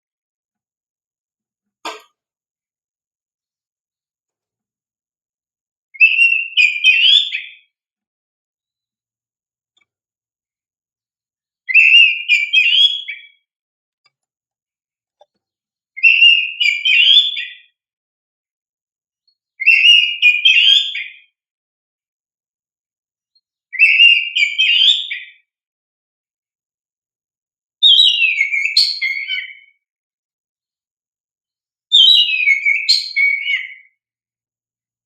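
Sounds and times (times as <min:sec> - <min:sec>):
bird singing whistled warbling notes: 0:06.0 - 0:07.7, 0:11.7 - 0:13.5, 0:16.0 - 0:17.8, 0:19.6 - 0:21.4, 0:23.7 - 0:25.5, 0:27.8 - 0:29.8, 0:31.9 - 0:34.0.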